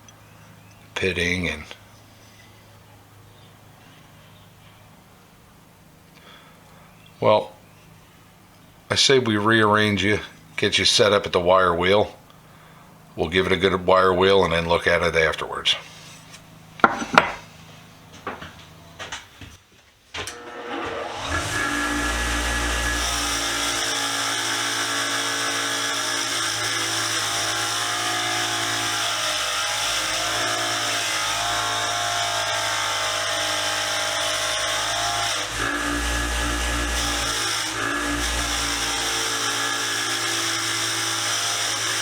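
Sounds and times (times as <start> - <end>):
clicks and knocks: 16.8 - 17.4
electric wire wheel grinding metal: 20.3 - 42.0.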